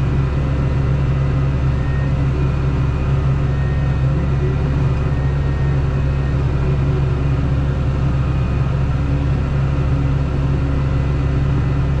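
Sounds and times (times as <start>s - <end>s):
heavy farm engine humming: 0.0s - 12.0s.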